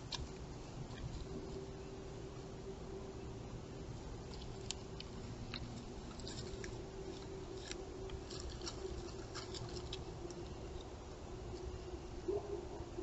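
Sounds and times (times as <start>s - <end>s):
small animal clicks and crackles: 0.0s - 1.6s, 4.2s - 11.7s
steady low hum: 0.0s - 13.0s.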